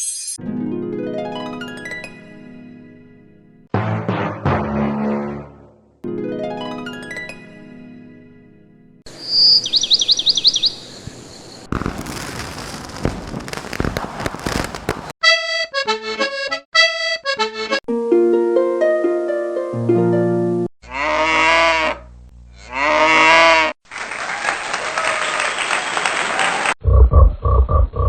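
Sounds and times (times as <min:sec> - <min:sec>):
melody notes and held chords: 0:00.4 - 0:03.7, 0:06.0 - 0:09.0
noisy crackling: 0:11.0 - 0:15.2.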